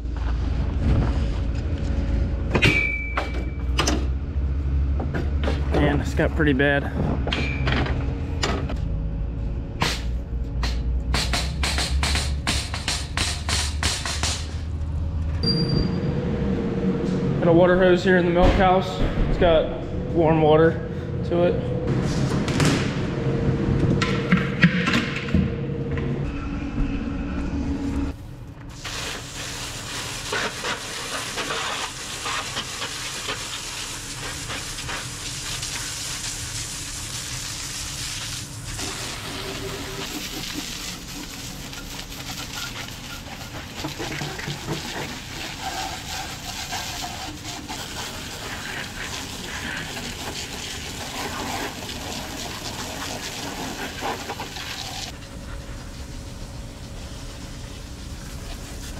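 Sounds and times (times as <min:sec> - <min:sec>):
loud steady hum: 0:00.0 - 0:29.4
hose water spraying: 0:28.7 - 0:55.2, 0:55.8 - 0:58.9.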